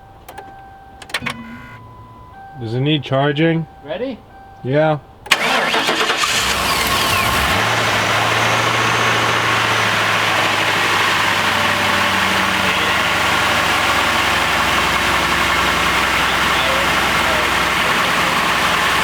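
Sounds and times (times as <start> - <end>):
engine cranking on starter: 5.3 - 19.0
engine idling: 5.3 - 19.0.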